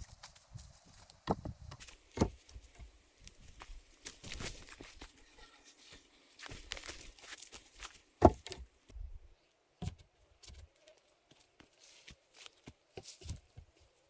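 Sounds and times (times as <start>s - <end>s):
rustling: 0.0s - 9.3s
knocks: 2.1s - 2.9s, 8.2s - 8.7s.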